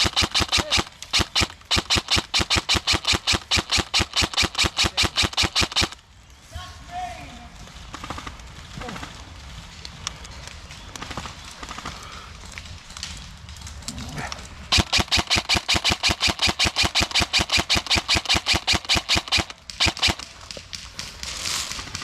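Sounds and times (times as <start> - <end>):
airsoft gun firing full auto: 0.0 - 6.0, 14.7 - 20.5.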